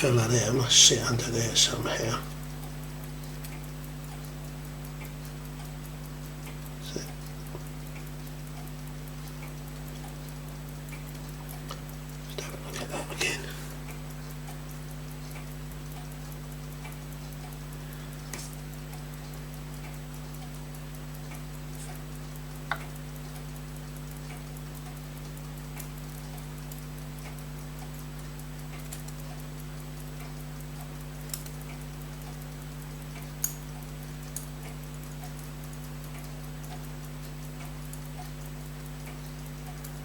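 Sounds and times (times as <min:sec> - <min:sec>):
steady electrical hum: 0:00.0 - 0:40.0
tweezers clicking on metal parts: 0:31.3 - 0:32.4, 0:33.4 - 0:34.6.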